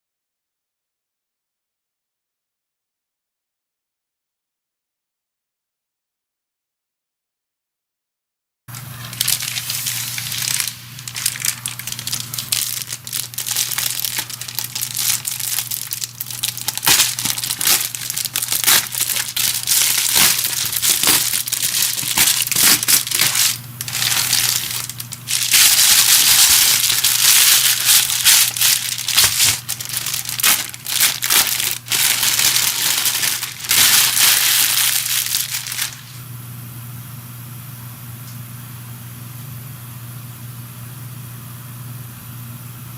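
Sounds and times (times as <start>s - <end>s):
packaging crinkling: 8.7s - 36.2s
steady low hum: 8.7s - 42.9s.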